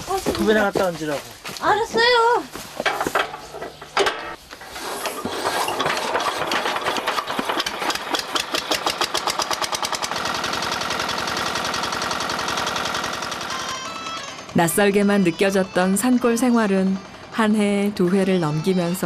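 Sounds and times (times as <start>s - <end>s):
small engine starting and running: 4.7s - 18.4s.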